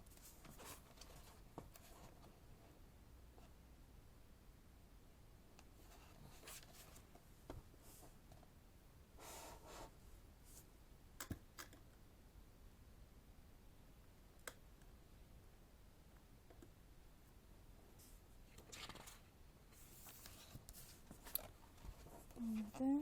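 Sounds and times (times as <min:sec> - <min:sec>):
pages turning: 0:18.5 - 0:22.0.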